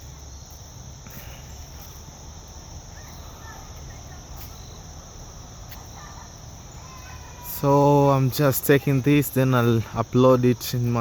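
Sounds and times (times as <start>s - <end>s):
crickets chirring: 0.0s - 11.0s
faint bird chirps: 2.9s - 8.2s.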